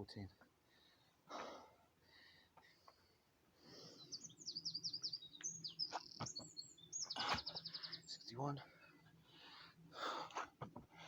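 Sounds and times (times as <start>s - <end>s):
bird chirping: 3.8s - 9.0s.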